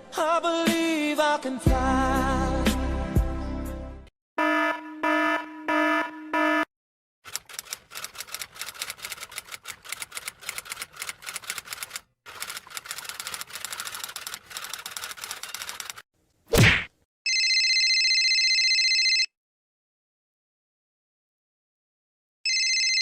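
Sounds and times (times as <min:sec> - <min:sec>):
typewriter keys clacking: 0:07.3 - 0:16.0.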